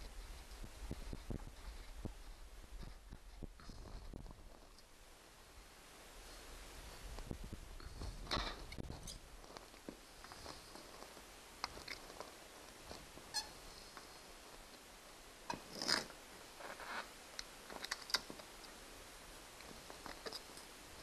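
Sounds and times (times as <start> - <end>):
cable clicks and scrapes: 15.5 - 18.7.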